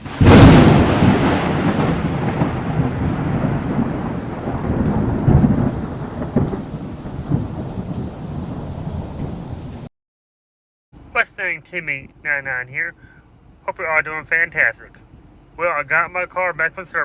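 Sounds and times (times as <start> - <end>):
rolling thunder rumbling: 0.0 - 9.9
sharp thunderclap: 0.0 - 9.9
steady rain: 0.0 - 9.9.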